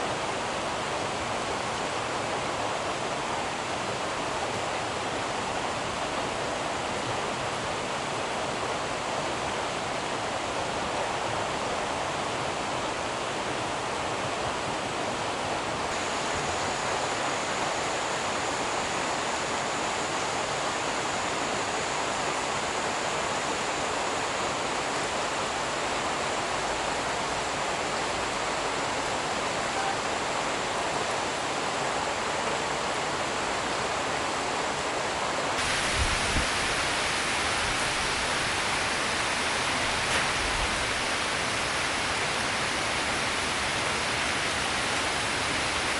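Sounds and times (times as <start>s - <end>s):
rain hiss: 0.0s - 45.9s.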